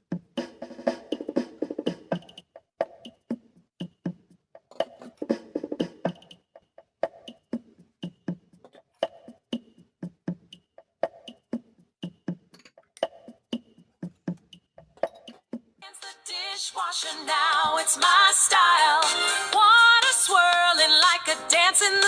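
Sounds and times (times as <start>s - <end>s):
sparse percussive beat: 0.0s - 15.8s.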